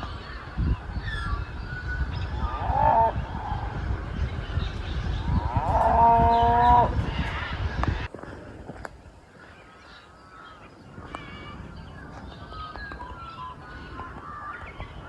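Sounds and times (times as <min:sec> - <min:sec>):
steady low rumble: 0:00.0 - 0:09.3
animal calls: 0:02.0 - 0:04.0, 0:05.3 - 0:07.3.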